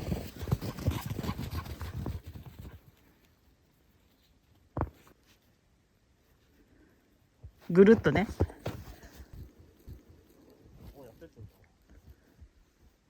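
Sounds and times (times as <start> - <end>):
footsteps crunching through snow: 7.6 - 9.7.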